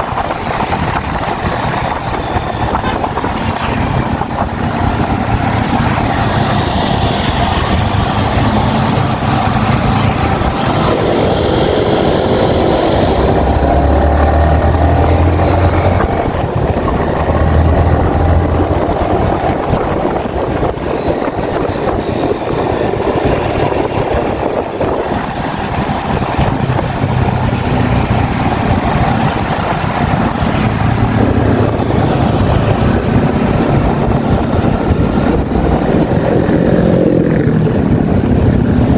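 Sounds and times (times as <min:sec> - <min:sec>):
motorcycle engine revving: 0:00.0 - 0:38.9
wind and road noise: 0:00.0 - 0:38.9.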